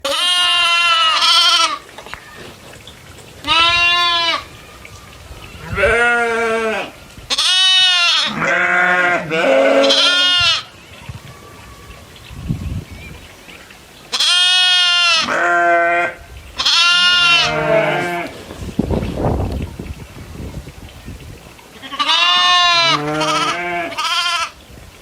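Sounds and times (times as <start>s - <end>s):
goats bleating: 0.0s - 2.5s, 3.4s - 4.6s, 5.5s - 10.8s, 14.1s - 18.5s, 21.8s - 24.6s.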